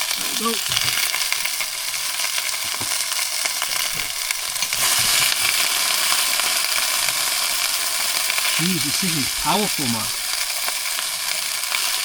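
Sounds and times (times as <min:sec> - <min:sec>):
food sizzling in a frying pan: 0:00.0 - 0:12.0.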